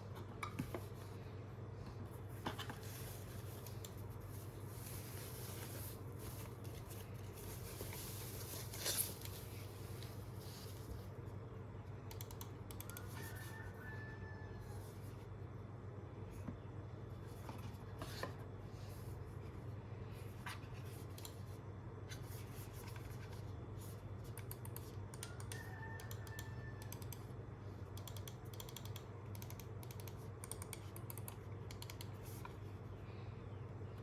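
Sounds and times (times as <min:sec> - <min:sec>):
steady low hum: 0:00.0 - 0:25.5.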